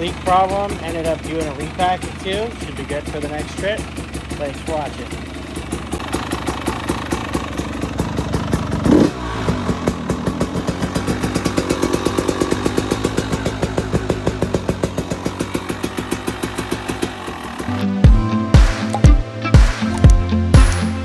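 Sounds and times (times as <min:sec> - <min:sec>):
dirt bike engine idling: 0:00.0 - 0:18.2.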